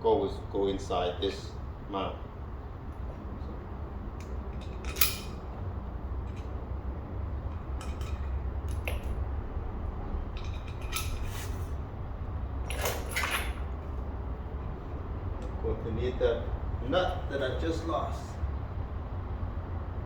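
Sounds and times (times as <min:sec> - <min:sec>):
steady low hum: 0:00.0 - 0:20.0
small metal parts clinking: 0:04.2 - 0:05.6, 0:07.4 - 0:09.2, 0:10.3 - 0:11.8, 0:12.6 - 0:14.0.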